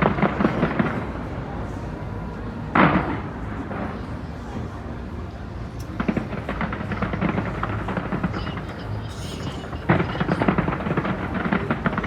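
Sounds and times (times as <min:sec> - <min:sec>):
fireworks crackling: 0:05.9 - 0:12.0.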